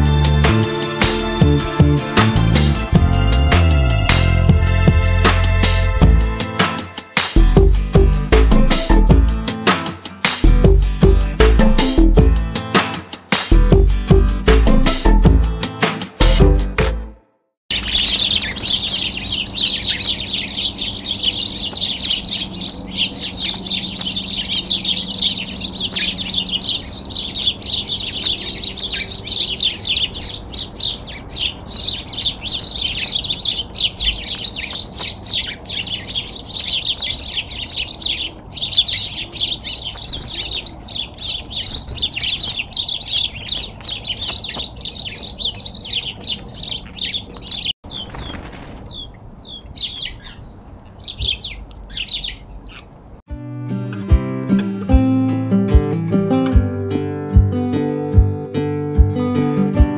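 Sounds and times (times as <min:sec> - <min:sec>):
small birds chirping: 0:17.7 - 0:53.1.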